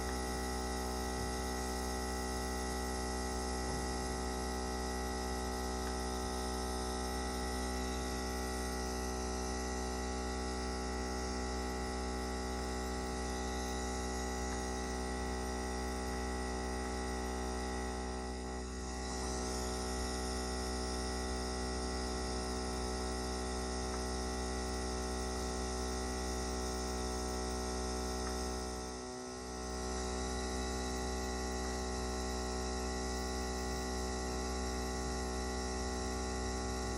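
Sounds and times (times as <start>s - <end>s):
nebulizer electric hum: 0.0s - 36.9s.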